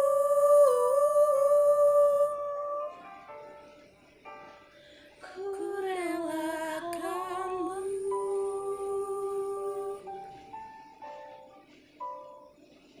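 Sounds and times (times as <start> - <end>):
woman singing a long note: 0.0 - 3.1, 5.2 - 10.4
soft instrumental accompaniment: 0.0 - 13.0.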